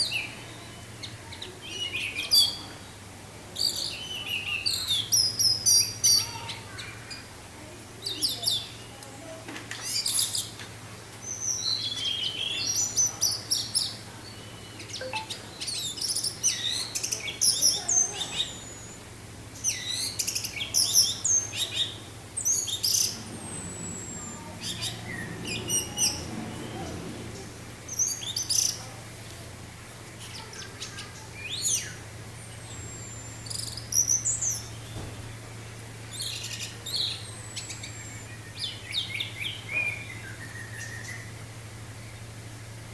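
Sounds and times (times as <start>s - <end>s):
thrush singing: 20.6s - 29.6s
steady low hum: 21.4s - 30.2s.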